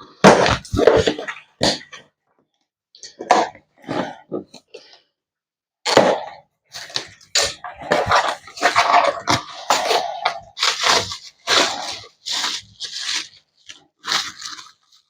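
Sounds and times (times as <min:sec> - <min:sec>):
packaging crinkling and rustling: 0:06.7 - 0:15.0.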